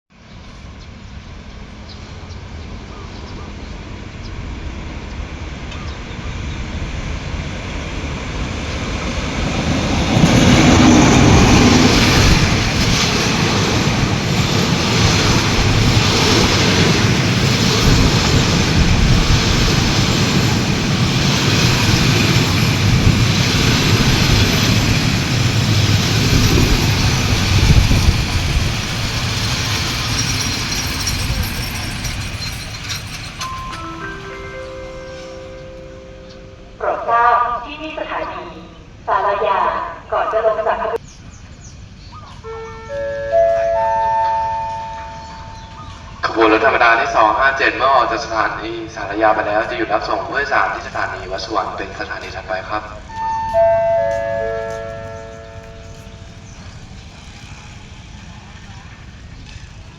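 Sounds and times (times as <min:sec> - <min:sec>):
diesel train approaching: 0:00.1 - 0:59.9
wheels clacking over rail joints: 0:07.8 - 0:35.6.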